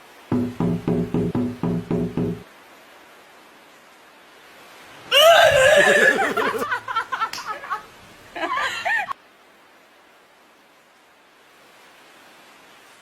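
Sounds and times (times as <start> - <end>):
person laughing: 5.2 - 6.8.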